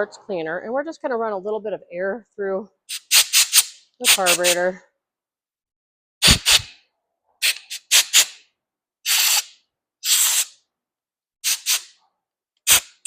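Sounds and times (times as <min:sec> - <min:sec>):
compressed air blasts: 0:02.9 - 0:04.6, 0:06.2 - 0:06.8, 0:07.4 - 0:08.4, 0:09.1 - 0:10.6, 0:11.4 - 0:11.9, 0:12.6 - 0:13.0.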